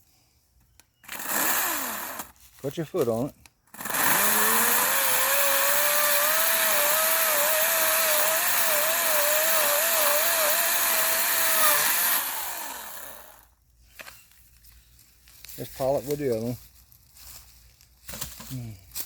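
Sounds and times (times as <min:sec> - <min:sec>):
chainsaw cutting through log: 0:01.0 - 0:02.4, 0:03.7 - 0:13.5.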